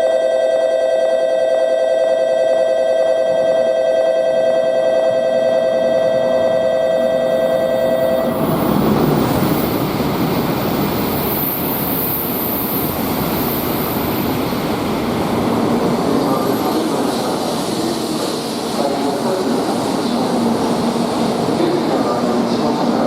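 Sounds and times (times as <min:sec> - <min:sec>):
train wheels and air rushing: 0:06.1 - 0:23.0.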